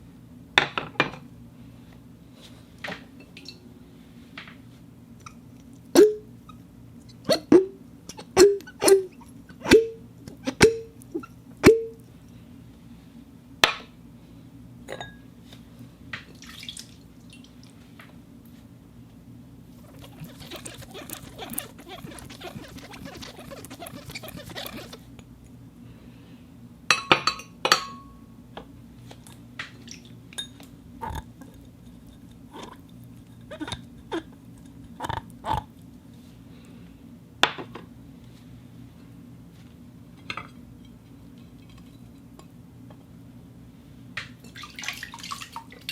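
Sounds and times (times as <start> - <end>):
glass tapping and clinking: 26.9 - 28.0.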